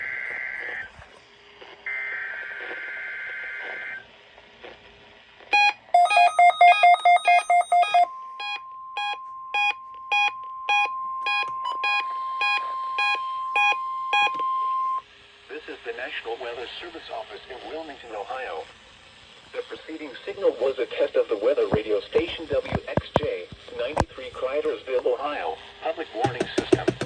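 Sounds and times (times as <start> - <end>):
electronic alert beeping: 5.6 - 14.3
steady warning alarm tone: 5.6 - 15.0, 26.3 - 27.0.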